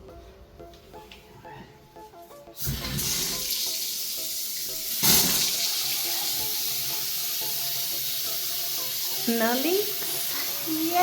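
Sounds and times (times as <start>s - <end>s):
water running from faucet: 2.6s - 11.0s.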